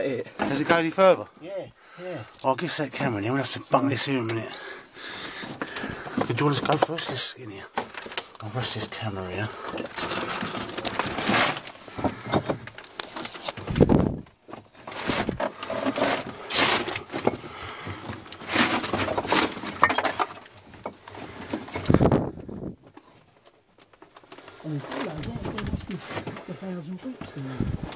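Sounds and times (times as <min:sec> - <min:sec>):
bricks scraping and clattering: 0:05.3 - 0:22.6.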